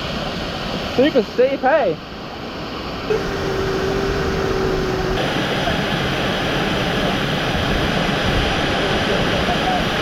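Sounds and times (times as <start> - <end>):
waterfall roaring: 0.0 - 10.0
steady tone: 3.0 - 8.0.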